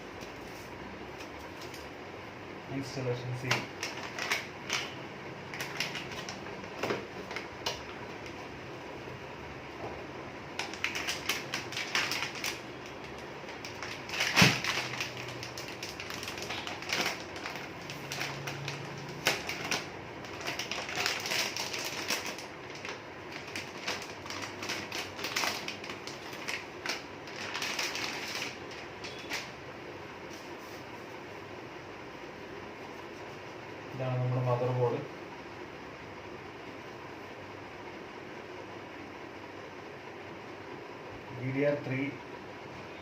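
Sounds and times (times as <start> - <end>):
packaging crinkling and rattling: 3.4 - 8.4, 10.5 - 29.5.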